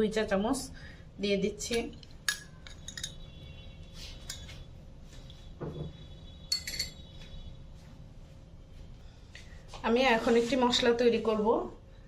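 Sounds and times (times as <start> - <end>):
teaspoon clinking against dish: 1.6 - 3.2, 6.5 - 7.0.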